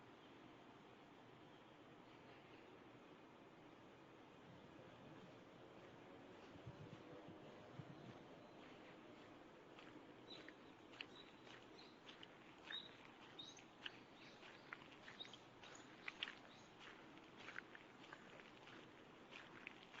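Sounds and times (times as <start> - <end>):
bird chirps: 10.2 - 17.5.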